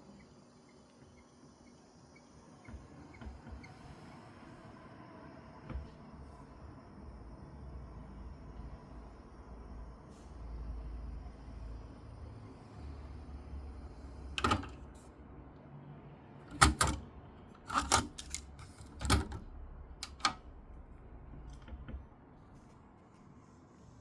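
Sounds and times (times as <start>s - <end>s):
cassette deck keys clicking: 14.4s - 14.9s, 16.5s - 17.0s, 17.6s - 20.4s.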